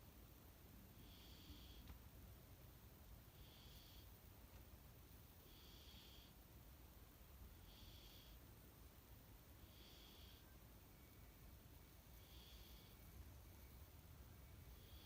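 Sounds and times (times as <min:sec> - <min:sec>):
cat snoring faintly: 0:00.8 - 0:02.0, 0:03.2 - 0:04.3, 0:05.2 - 0:06.4, 0:07.4 - 0:08.6, 0:09.5 - 0:15.0.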